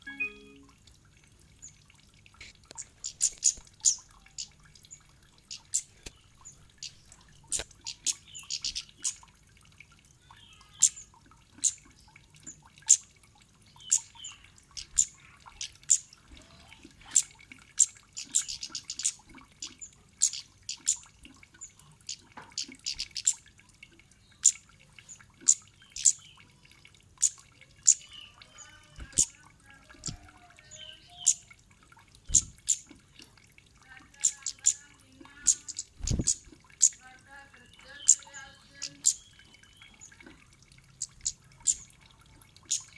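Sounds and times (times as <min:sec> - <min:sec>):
bird chip notes: 0:00.0 - 0:00.8.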